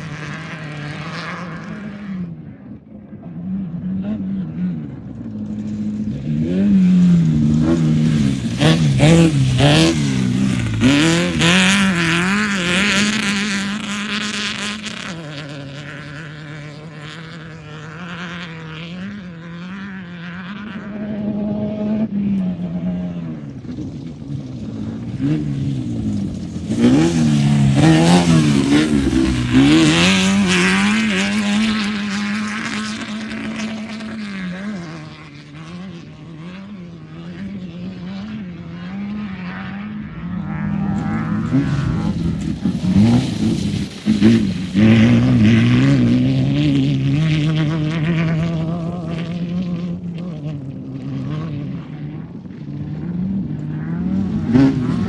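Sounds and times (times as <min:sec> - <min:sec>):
off-road vehicle engines revving: 0:00.0 - 0:55.0.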